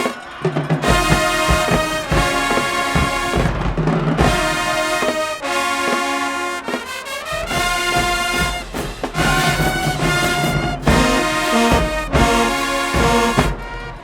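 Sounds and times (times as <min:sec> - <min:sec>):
drum strokes: 0:00.0 - 0:14.0
loud brass chords: 0:00.0 - 0:14.0
marching band playing: 0:00.0 - 0:14.0
brass glide rising in pitch: 0:04.2 - 0:13.7.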